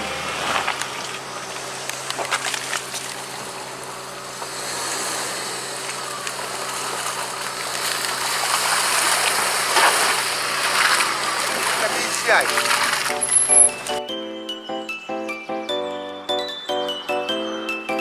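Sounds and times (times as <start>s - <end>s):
tyre noise on rough dirt: 0.0s - 13.9s
car engine running: 0.0s - 14.1s.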